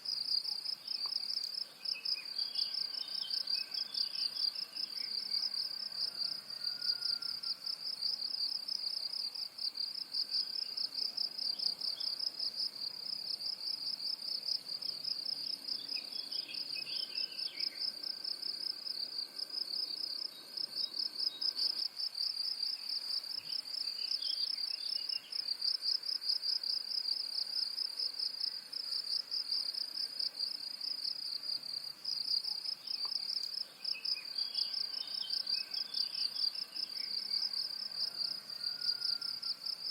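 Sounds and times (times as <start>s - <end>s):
faint bird chirps: 0.5s - 7.6s
high-pitched insect trill: 1.0s - 8.8s, 32.1s - 39.9s.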